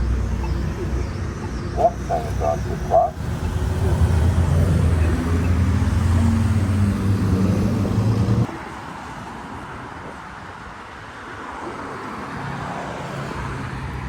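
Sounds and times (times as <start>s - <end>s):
vehicle engine idling: 0.0s - 8.5s
road traffic noise: 0.0s - 14.0s.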